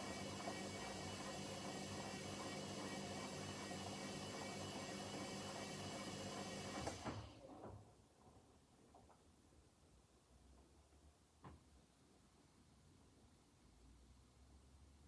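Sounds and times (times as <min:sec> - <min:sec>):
washing machine motor hum and whine: 0:00.0 - 0:07.5.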